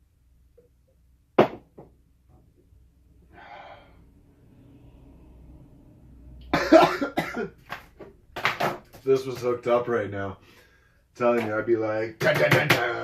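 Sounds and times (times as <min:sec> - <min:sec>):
breath out: 0:03.3 - 0:04.1
man coughing: 0:06.5 - 0:07.6.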